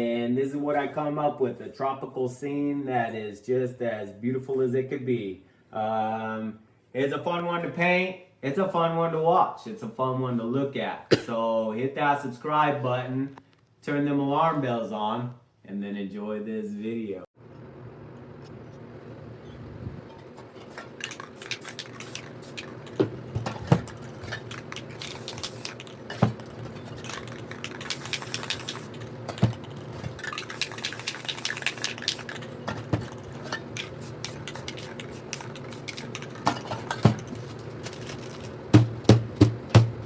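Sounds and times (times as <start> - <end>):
spray paint hissing: 21.0 - 23.0, 24.1 - 26.4, 27.0 - 32.5, 33.2 - 36.5
spray can rattling clicks: 21.0 - 23.1, 23.8 - 32.5, 33.1 - 38.5.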